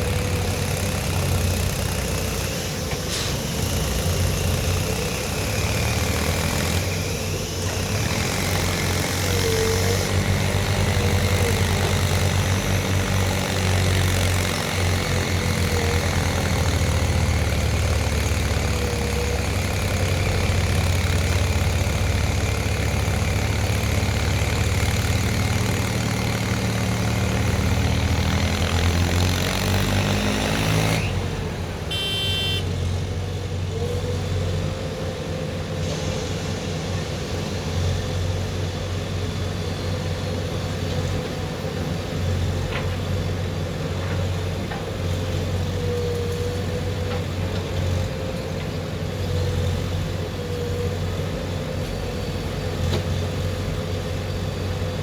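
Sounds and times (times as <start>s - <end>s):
diesel engine revving under load: 0.0s - 34.7s
brief high tone: 31.9s - 32.7s.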